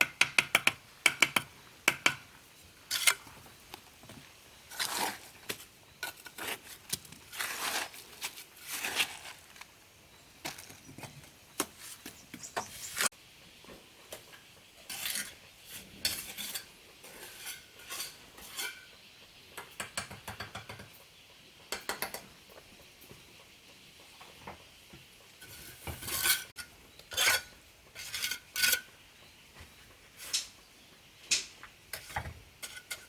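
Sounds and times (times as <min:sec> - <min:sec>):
hard objects scraping and clinking: 0:25.4 - 0:28.9.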